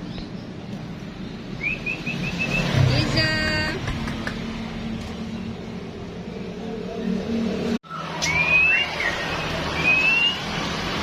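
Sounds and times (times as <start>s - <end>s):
vehicle engine humming: 0.0s - 11.0s
bird whistling: 1.6s - 2.8s, 7.9s - 10.5s.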